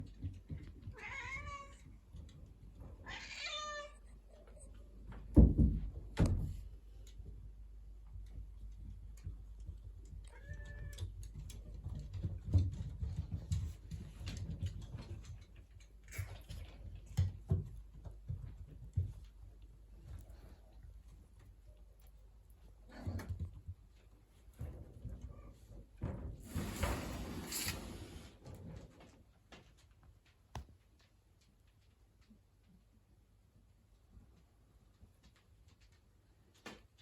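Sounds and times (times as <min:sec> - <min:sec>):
cat meowing: 0:00.9 - 0:01.8, 0:03.0 - 0:04.0.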